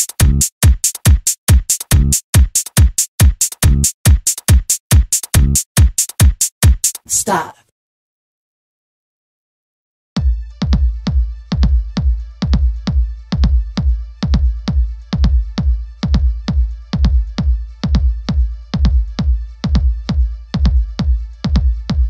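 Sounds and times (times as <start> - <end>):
drum machine beat: 0.0 - 7.4, 10.6 - 22.0
electronic dance music: 0.0 - 7.6
heavy bass thump: 3.6 - 3.9, 10.2 - 20.9.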